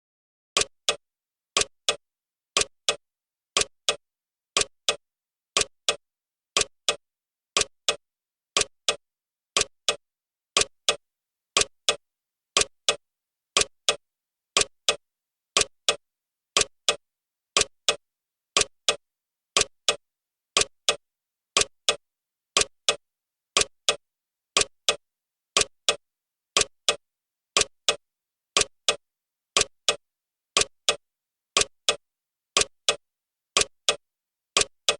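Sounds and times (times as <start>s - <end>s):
clock ticking: 0.6s - 1.0s, 1.6s - 2.0s, 2.6s - 3.0s, 3.6s - 4.0s, 4.6s - 5.0s, 5.6s - 6.0s, 6.6s - 7.0s, 7.6s - 8.0s, 8.6s - 9.0s, 9.6s - 10.0s, 10.6s - 11.0s, 11.6s - 12.0s, 12.6s - 13.0s, 13.6s - 14.0s, 14.6s - 15.0s, 15.6s - 16.0s, 16.6s - 17.0s, 17.6s - 18.0s, 18.6s - 19.0s, 19.6s - 20.0s, 20.6s - 21.0s, 21.6s - 22.0s, 22.6s - 23.0s, 23.6s - 24.0s, 24.6s - 25.0s, 25.6s - 26.0s, 26.6s - 27.0s, 27.6s - 28.0s, 28.6s - 29.0s, 29.6s - 30.0s, 30.6s - 31.0s, 31.6s - 32.0s, 32.6s - 33.0s, 33.6s - 34.0s, 34.6s - 34.9s.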